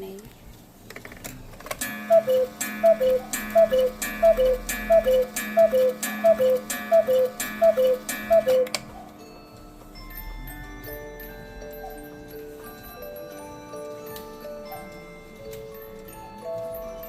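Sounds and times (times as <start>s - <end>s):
cuckoo clock click: 1.8s - 9.2s
cuckoo clock call: 1.8s - 17.0s.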